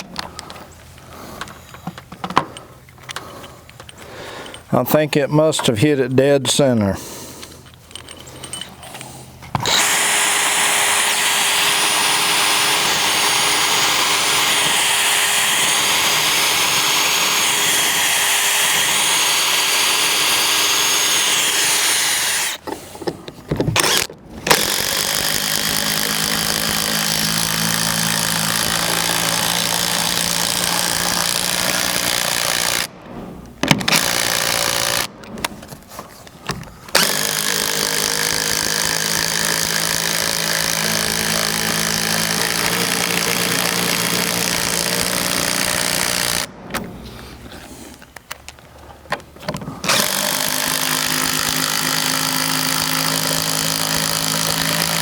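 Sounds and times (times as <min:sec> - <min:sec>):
power drill driving bolts into wood: 0:09.5 - 0:22.9, 0:23.5 - 0:35.8, 0:36.5 - 0:46.9, 0:49.6 - 0:55.0.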